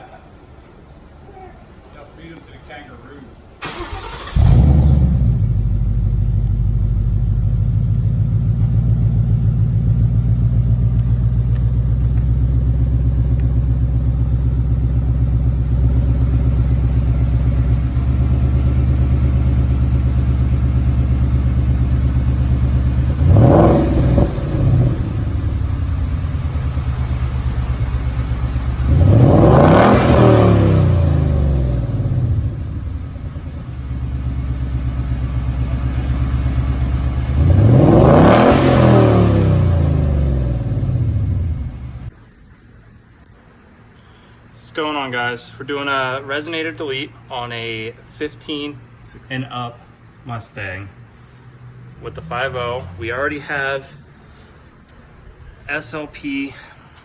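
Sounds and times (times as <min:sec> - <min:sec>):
car exhaust idling and revving: 0:04.4 - 0:42.2, 0:51.0 - 0:55.4.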